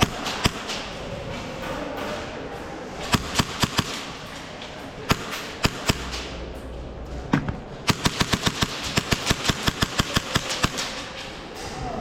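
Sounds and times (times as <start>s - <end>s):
airsoft guns firing: 0.0s - 1.0s, 3.1s - 4.4s, 5.0s - 6.5s, 7.8s - 11.3s.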